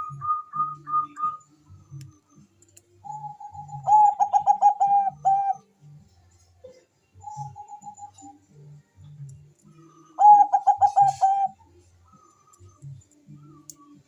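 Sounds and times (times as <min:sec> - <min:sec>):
dove rapid trill: 0:03.0 - 0:05.6, 0:07.2 - 0:08.4, 0:09.9 - 0:12.8
dove cooing: 0:03.0 - 0:05.7, 0:06.7 - 0:08.4, 0:09.8 - 0:12.8.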